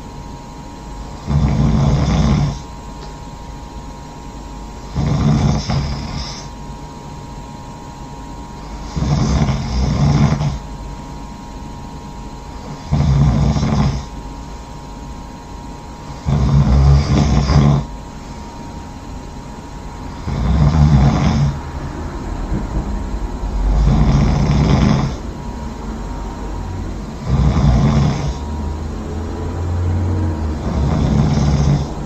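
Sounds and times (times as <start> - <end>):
person snoring loudly: 1.2 - 2.7, 4.8 - 6.5, 8.6 - 10.6, 12.6 - 14.2, 16.1 - 17.9, 20.1 - 22.0, 23.6 - 25.3, 27.0 - 32.0.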